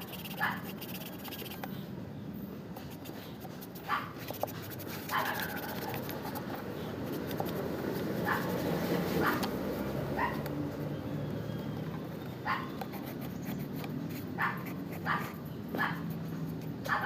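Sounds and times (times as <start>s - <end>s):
scratching and rubbing: 0.0s - 1.8s, 2.8s - 9.6s, 12.7s - 17.0s
dog yipping: 0.4s - 0.7s, 3.8s - 4.3s, 5.0s - 6.0s, 8.2s - 8.6s, 9.2s - 9.5s, 10.1s - 10.5s, 12.4s - 12.9s, 14.4s - 16.2s.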